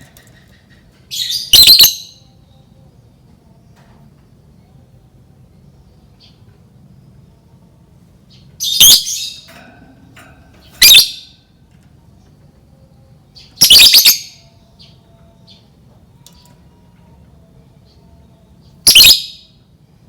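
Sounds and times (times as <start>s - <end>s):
lovebird shrill chattering calls: 1.2s - 2.0s, 10.8s - 11.2s, 13.6s - 14.2s, 18.9s - 19.3s
faint bird chirps: 17.8s - 19.2s.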